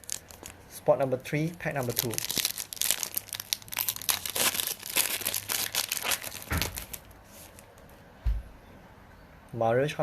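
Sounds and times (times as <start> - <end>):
foil wrapper tearing and crinkling: 0.0 - 0.7, 1.4 - 7.7
soft low thump: 8.2 - 8.6.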